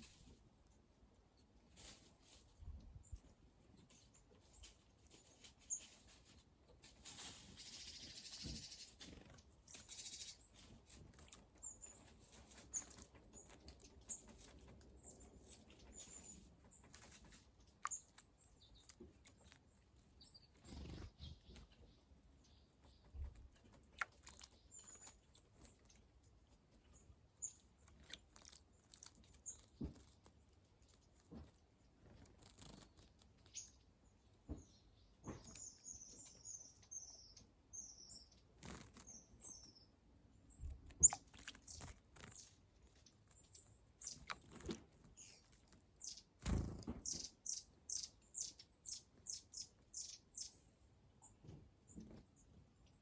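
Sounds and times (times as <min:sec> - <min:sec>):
birds chirping: 0:07.5 - 0:53.0.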